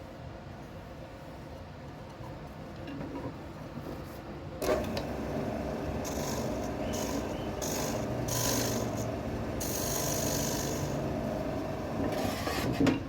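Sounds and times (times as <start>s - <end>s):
wood lathe humming: 4.6s - 12.3s.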